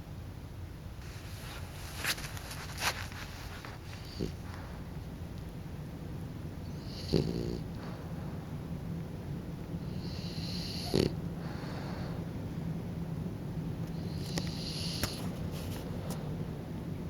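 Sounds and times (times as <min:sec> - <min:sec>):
dog snoring: 0:04.0 - 0:04.8, 0:06.6 - 0:08.1, 0:09.8 - 0:12.2, 0:13.9 - 0:15.3.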